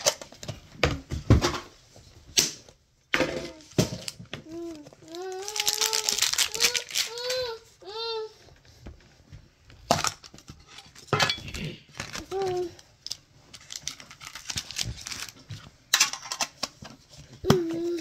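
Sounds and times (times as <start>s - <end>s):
young child babbling and whining: 4.4s - 8.4s, 12.2s - 12.8s, 17.4s - 18.0s.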